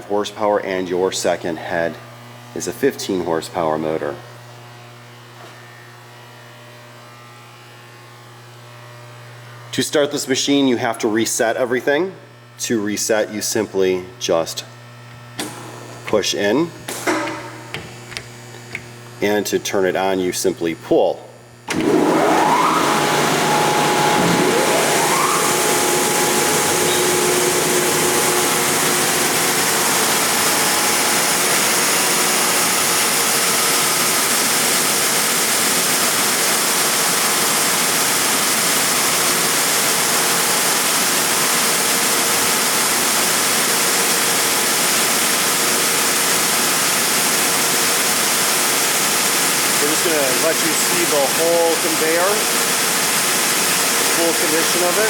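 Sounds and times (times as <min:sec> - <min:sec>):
belt sander motors running: 0:12.3 - 0:55.0.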